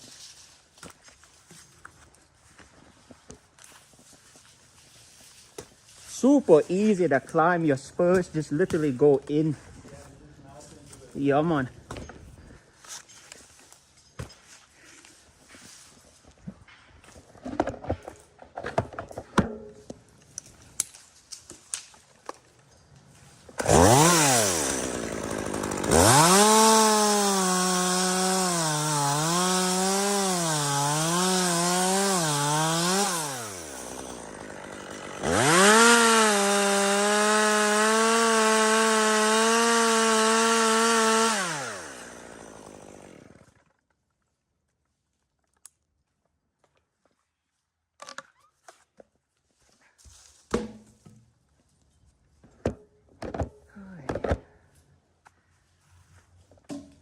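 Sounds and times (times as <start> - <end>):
chainsaw revving and cutting: 23.6 - 43.6.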